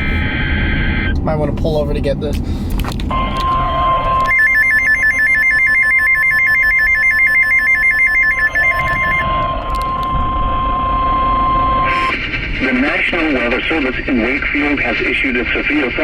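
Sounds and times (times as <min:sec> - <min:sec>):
steady alert tone: 0:03.1 - 0:12.1
warbling two-pitch tone: 0:03.2 - 0:12.1.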